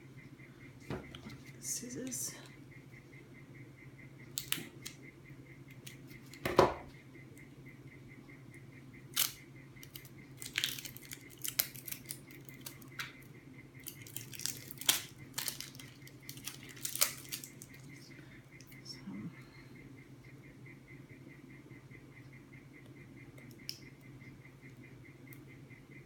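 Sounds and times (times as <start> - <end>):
low steady hum: 0.0 - 26.0
packaging crinkling: 9.1 - 13.1, 13.8 - 17.9.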